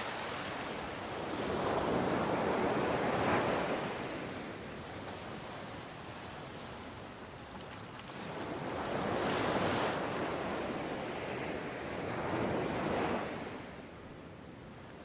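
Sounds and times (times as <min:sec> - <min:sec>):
ocean waves breaking: 0:00.0 - 0:04.3.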